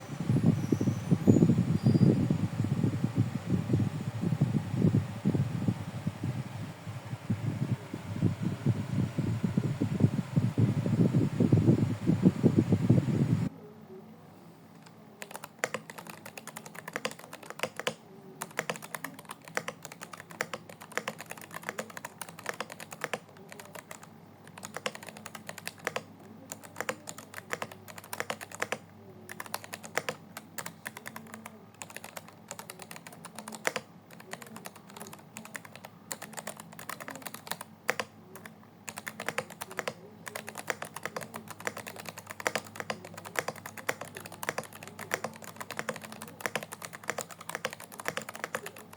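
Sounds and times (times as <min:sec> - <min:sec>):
computer keyboard typing: 0:14.8 - 0:48.9.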